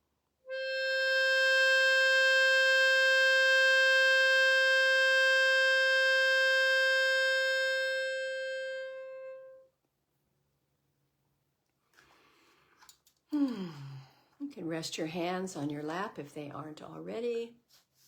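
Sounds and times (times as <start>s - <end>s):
wind instrument holding note: 0.5s - 9.6s.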